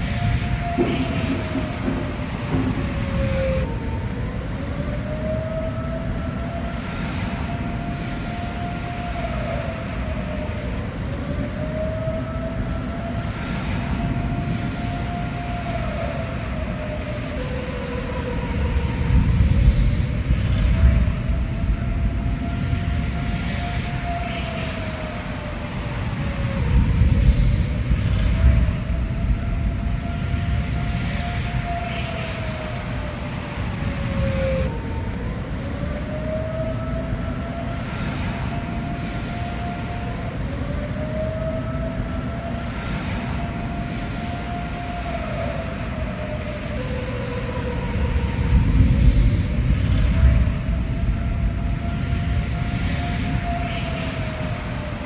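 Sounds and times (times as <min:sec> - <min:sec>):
warning siren wailing: 0:00.0 - 0:55.0.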